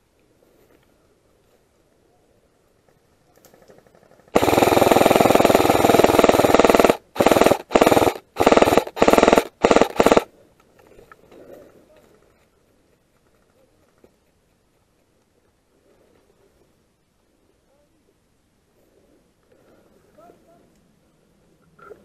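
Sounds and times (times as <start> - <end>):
airsoft gun automatic bursts: 3.8 - 10.3.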